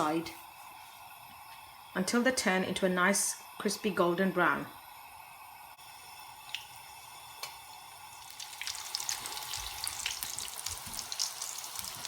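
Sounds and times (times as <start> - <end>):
cutlets sizzling in oil: 5.8 - 12.0.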